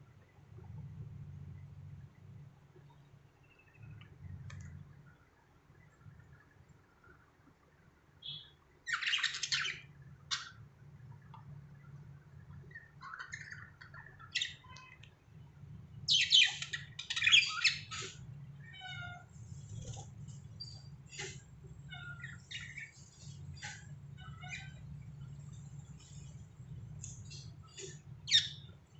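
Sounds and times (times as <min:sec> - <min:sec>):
faint low hum: 0:00.0 - 0:28.9
budgerigars chattering and squawking: 0:16.1 - 0:18.2, 0:18.8 - 0:24.9, 0:25.8 - 0:28.8.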